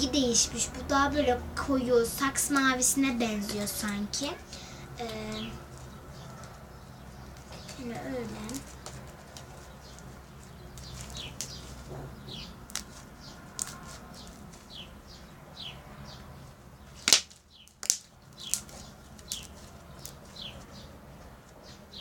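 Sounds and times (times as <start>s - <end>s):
small birds chirping: 0.0s - 22.0s
sharp clicks or pops: 17.0s - 18.7s.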